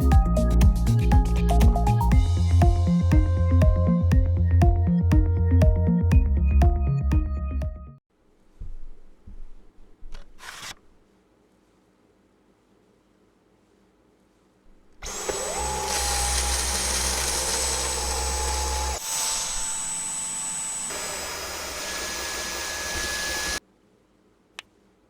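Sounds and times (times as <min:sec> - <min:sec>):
stick vacuum motor whine: 0:15.0 - 0:23.6.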